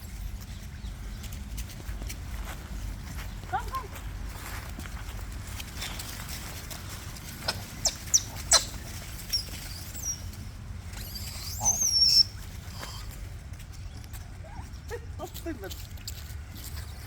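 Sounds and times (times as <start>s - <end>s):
steady low rumble: 0.0s - 11.4s
short sharp animal squeaks: 7.5s - 8.8s, 11.0s - 12.2s
thin wavering whistled calls: 9.3s - 10.3s, 11.0s - 12.3s.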